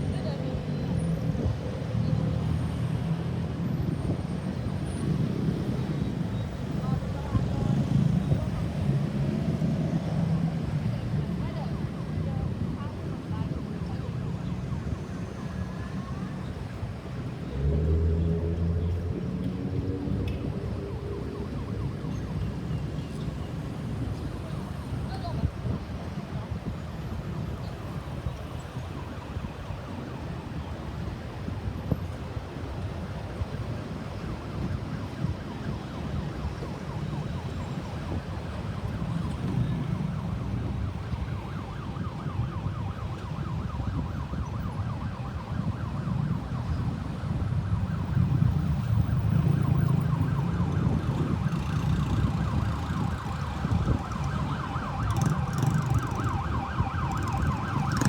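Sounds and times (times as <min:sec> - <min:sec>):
road traffic rumble: 0:00.0 - 0:58.0
ambulance siren warbling: 0:19.8 - 0:25.1, 0:32.7 - 0:58.0.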